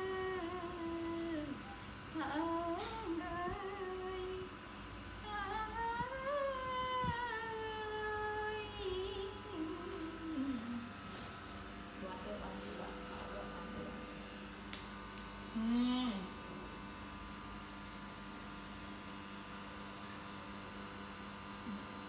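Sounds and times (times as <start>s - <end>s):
person humming a slow tune: 0.0s - 4.6s, 5.2s - 11.2s, 15.5s - 16.3s, 21.6s - 22.0s.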